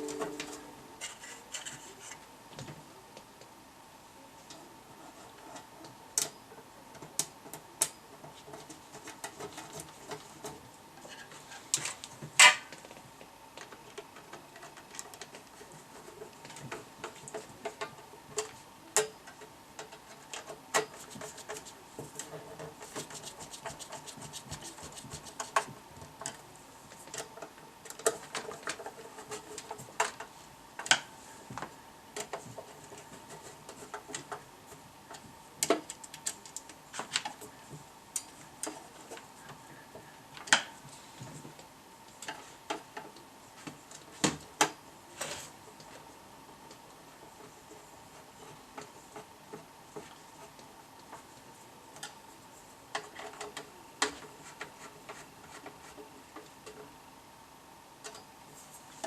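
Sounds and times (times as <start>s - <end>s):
faint steady tone: 0.0s - 1.4s.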